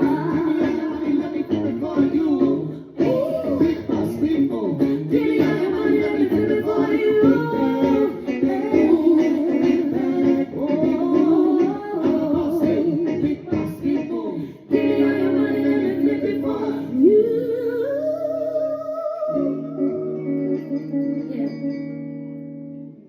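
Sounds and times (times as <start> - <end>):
woman singing: 0.0 - 22.2.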